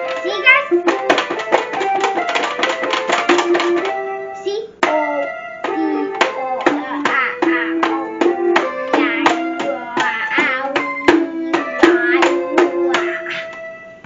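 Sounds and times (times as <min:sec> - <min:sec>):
toy keyboard electronic notes: 0:00.0 - 0:14.0.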